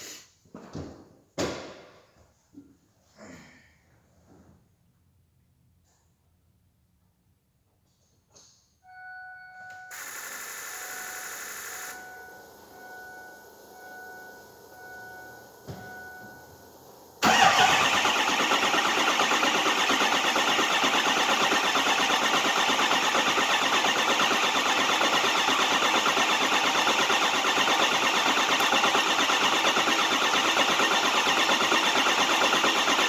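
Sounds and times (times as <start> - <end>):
faint steady chime tone: 8.8 - 10.0, 11.9 - 16.8
diesel engine cranking: 16.5 - 33.0.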